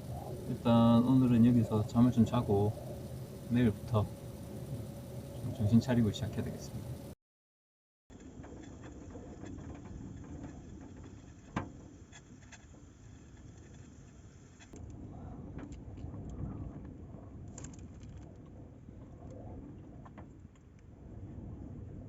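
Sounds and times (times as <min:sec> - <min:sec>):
gusty wind: 0:00.0 - 0:07.2.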